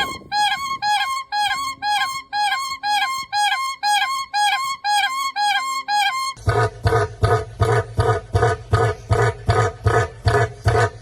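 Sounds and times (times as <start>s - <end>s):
bird two-note flute-like call: 0.0s - 6.4s.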